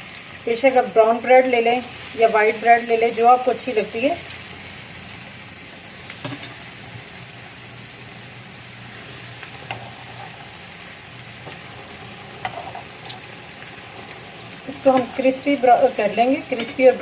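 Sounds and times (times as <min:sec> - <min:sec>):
bread frying in oil: 0:00.0 - 0:17.0
oil crackles and pops: 0:09.2 - 0:15.2.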